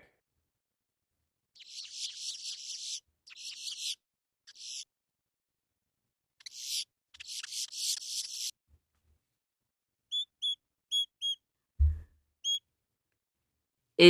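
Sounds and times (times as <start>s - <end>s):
grackle harsh calls: 1.6s - 4.8s.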